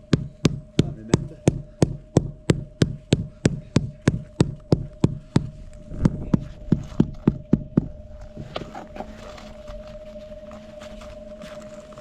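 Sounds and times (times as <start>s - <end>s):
steady hum: 0.0s - 12.0s.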